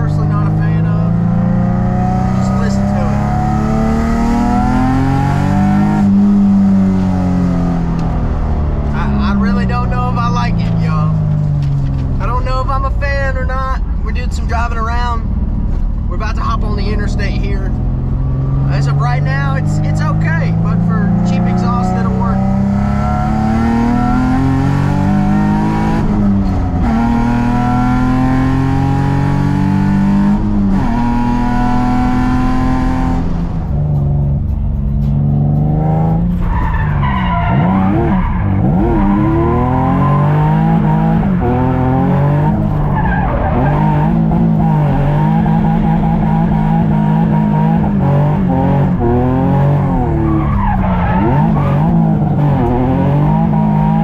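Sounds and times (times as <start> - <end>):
car engine accelerating hard: 0.0 - 54.0.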